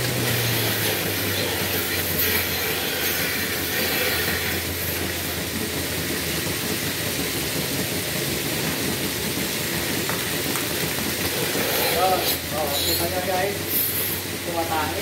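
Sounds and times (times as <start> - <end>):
milking machine hum: 0.0 - 15.0.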